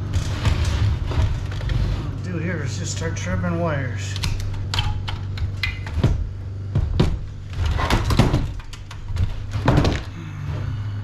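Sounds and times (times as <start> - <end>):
steady low hum: 0.0 - 11.0
cutters snipping wires: 4.1 - 5.9.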